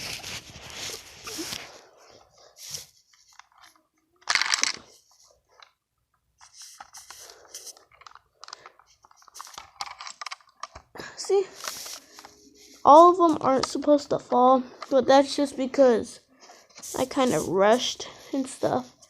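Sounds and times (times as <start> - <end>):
candies rattling out: 4.2 - 5.0, 6.6 - 12.2.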